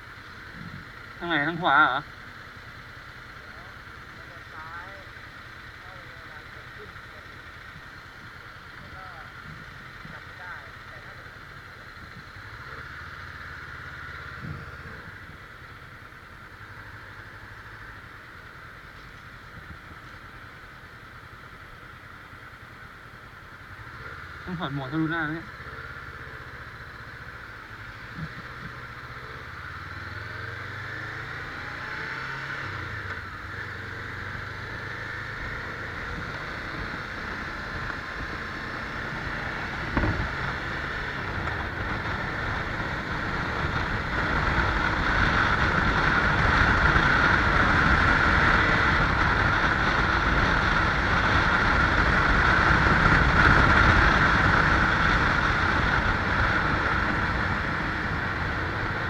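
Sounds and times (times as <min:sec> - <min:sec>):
motorcycle engine: 0:00.0 - 0:59.0.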